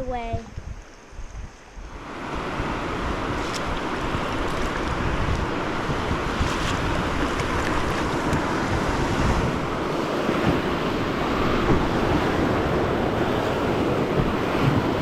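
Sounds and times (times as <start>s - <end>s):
wind noise on microphone: 0.0s - 15.0s
river water rushing: 1.9s - 15.0s.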